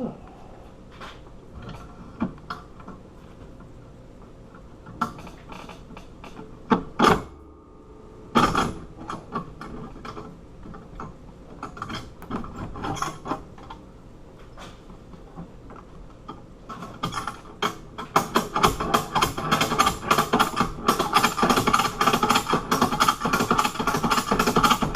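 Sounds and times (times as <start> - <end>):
loud sharp metal clanks: 6.8 - 13.4.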